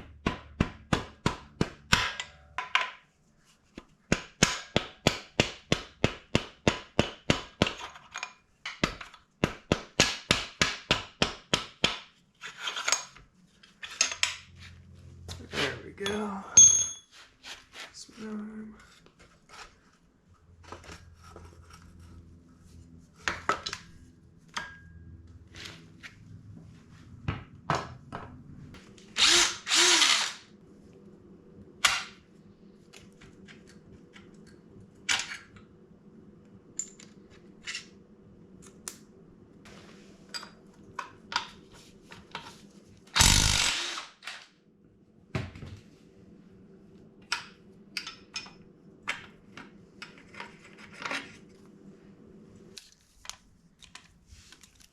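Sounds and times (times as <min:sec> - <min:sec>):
power tool running: 0:29.2 - 0:30.5, 0:43.2 - 0:44.4
clicks and knocks of tools: 0:47.2 - 0:51.5.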